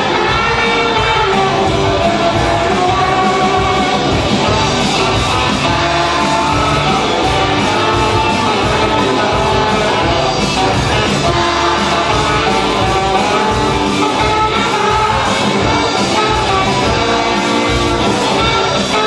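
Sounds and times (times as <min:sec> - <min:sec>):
guitar: 0:00.0 - 0:19.0
live rock band playing: 0:00.0 - 0:19.0.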